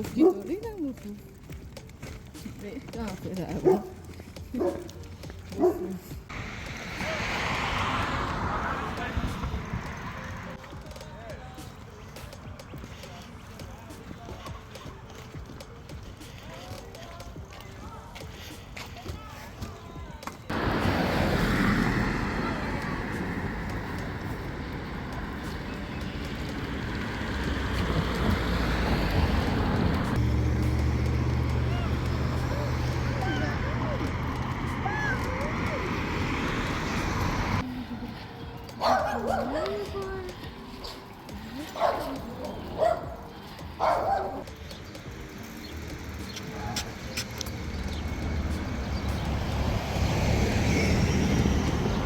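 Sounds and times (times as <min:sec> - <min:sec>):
dog barking: 0:00.0 - 0:00.6, 0:03.5 - 0:06.1, 0:38.8 - 0:39.9, 0:41.7 - 0:44.5
road noise rushing: 0:00.0 - 0:52.0
vehicle engine running: 0:02.7 - 0:11.6, 0:20.5 - 0:52.0.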